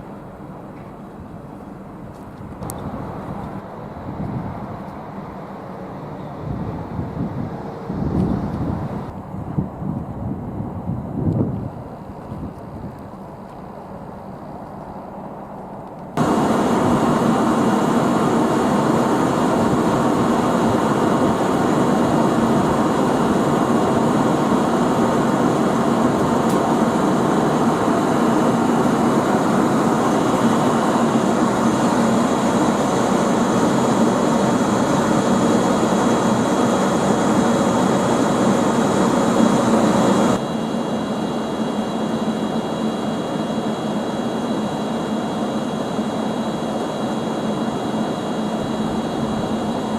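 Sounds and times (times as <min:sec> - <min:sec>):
locomotive noise: 0:13.0 - 0:40.4.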